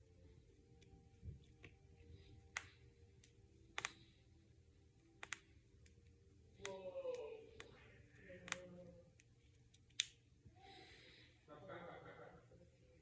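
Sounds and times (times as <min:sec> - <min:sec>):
knuckles cracking: 0:00.8 - 0:04.2, 0:05.0 - 0:10.2.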